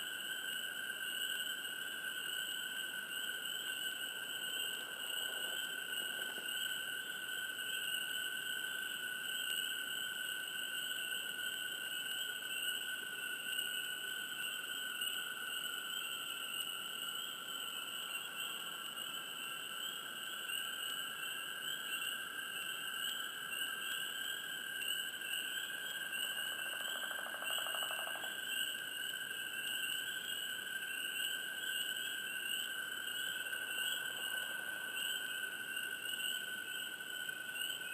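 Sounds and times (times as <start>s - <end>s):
low rapid pulsed frog trill: 23.0s - 37.9s.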